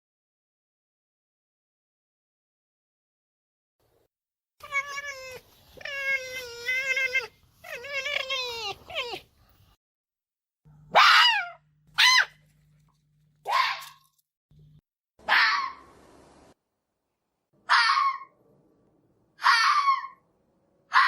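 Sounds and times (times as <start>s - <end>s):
animal harsh cries: 4.6s - 9.3s, 19.4s - 20.2s.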